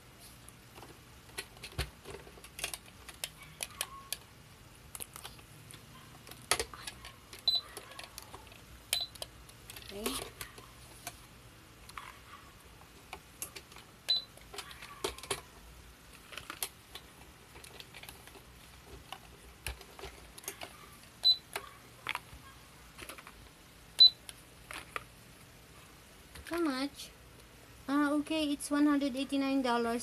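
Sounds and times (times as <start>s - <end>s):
plastic toys clattering: 0.7s - 4.3s, 4.9s - 11.1s, 12.8s - 23.4s, 24.6s - 25.1s
toy scanner beeps: 7.4s - 7.7s, 8.9s - 9.2s, 14.1s - 14.3s, 21.2s - 21.5s.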